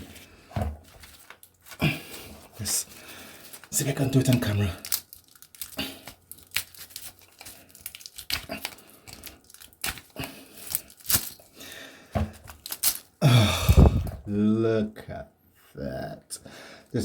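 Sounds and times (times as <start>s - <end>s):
windings tearing rasp: 4.3s - 11.5s, 12.5s - 13.1s.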